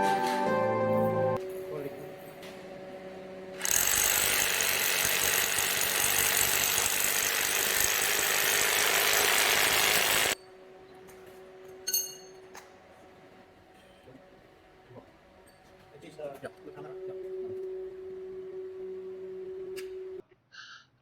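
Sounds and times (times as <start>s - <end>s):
hammer drill boring: 3.6s - 10.4s.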